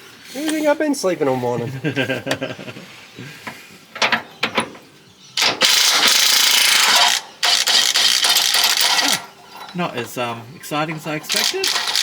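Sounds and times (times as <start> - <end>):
impact wrench rattling: 5.4 - 9.8, 11.3 - 12.0.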